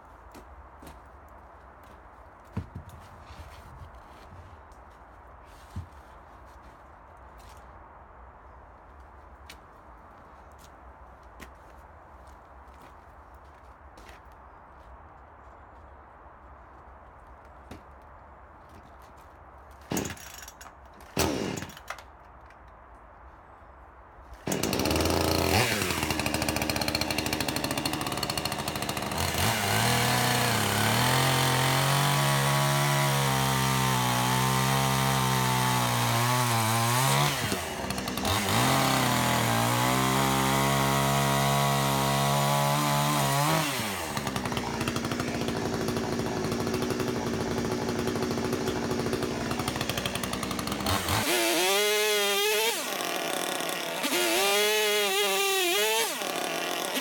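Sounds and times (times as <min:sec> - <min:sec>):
chainsaw running: 0:19.9 - 0:20.6, 0:21.2 - 0:21.8, 0:24.5 - 0:57.0.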